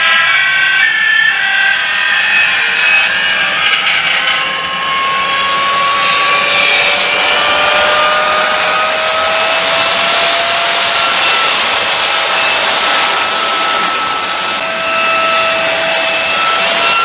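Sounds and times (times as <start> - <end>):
model train motor whirring: 0.0 - 17.0
thin rising whine: 0.0 - 17.0.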